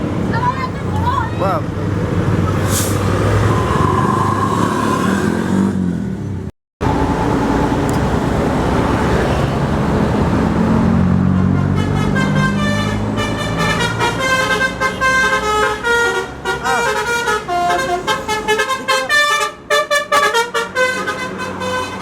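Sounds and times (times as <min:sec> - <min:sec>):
traffic noise: 0:00.0 - 0:22.0
bus engine running: 0:05.2 - 0:22.0
multi-tone bus horn melody: 0:11.2 - 0:22.0.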